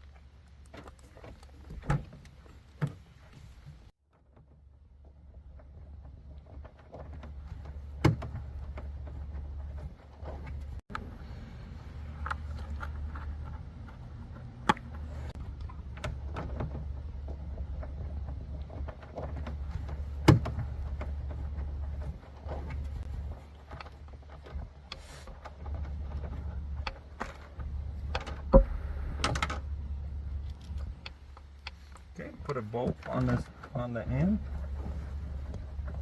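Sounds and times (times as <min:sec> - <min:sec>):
steady low hum: 0:04.6 - 0:36.0
hands fitting car parts clicking: 0:30.4 - 0:32.2.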